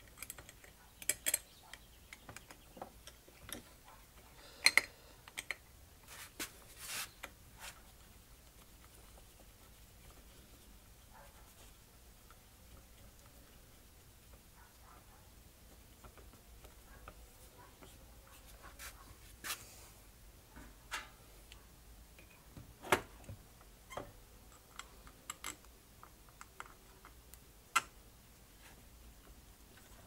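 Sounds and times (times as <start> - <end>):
small metal parts clicking: 0.0 - 3.6, 24.5 - 27.9.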